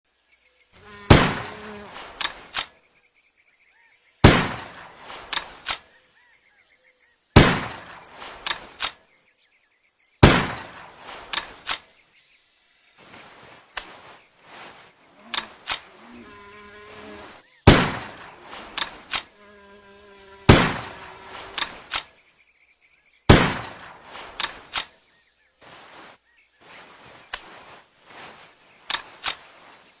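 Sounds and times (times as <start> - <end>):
rifle shots: 1.1 - 1.5, 4.2 - 4.8, 7.4 - 8.0, 10.2 - 10.9, 17.7 - 18.3, 20.5 - 21.0, 23.3 - 23.9.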